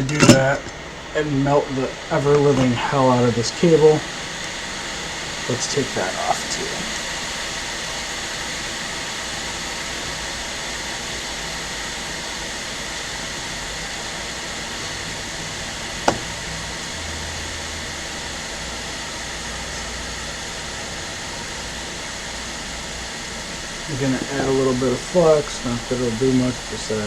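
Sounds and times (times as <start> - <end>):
blower air hiss: 0.0 - 27.0.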